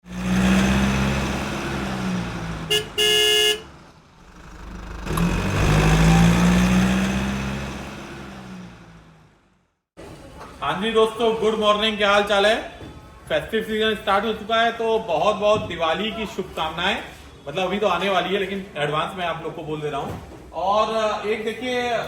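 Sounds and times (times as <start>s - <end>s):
car engine passing: 0.0s - 9.5s
vehicle approaching: 0.0s - 9.7s
car horn honking: 2.7s - 3.8s.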